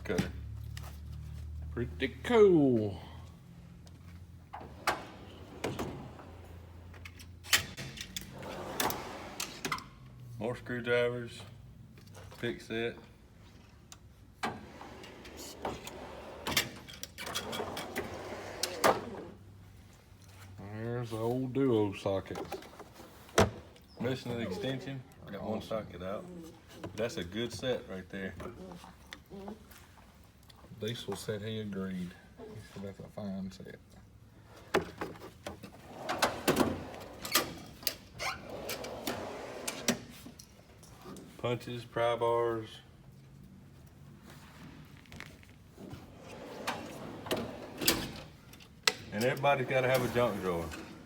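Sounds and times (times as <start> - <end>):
toolbox drawer sliding: 4.6 - 6.9, 7.6 - 9.8, 14.4 - 19.4, 34.6 - 40.2, 45.8 - 51.0.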